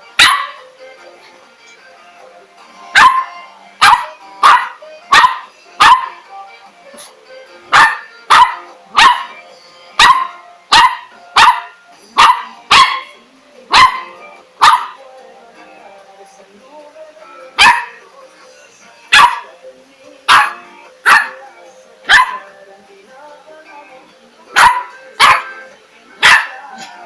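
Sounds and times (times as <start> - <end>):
dog barking: 0.2 - 0.6, 3.0 - 6.2, 7.7 - 9.4, 10.0 - 15.0, 17.6 - 18.0, 19.1 - 19.5, 20.3 - 21.4, 22.1 - 22.6, 24.5 - 25.6, 26.2 - 26.9.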